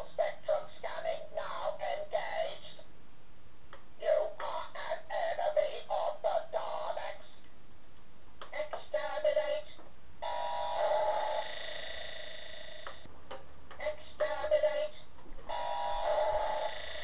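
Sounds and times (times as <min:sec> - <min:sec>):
ring-modulated robotic voice: 0:10.2 - 0:13.0, 0:15.5 - 0:17.0
buzzing electronic drone: 0:10.2 - 0:13.1, 0:15.5 - 0:17.0.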